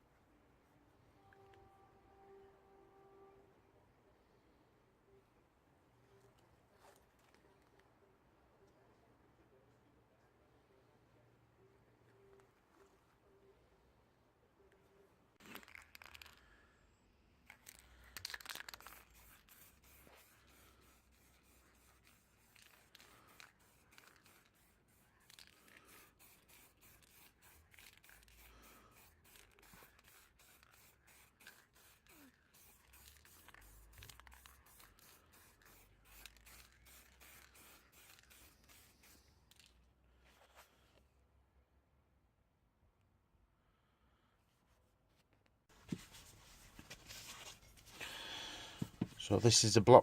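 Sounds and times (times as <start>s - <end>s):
masking tape being peeled off: 17.5s - 39.8s.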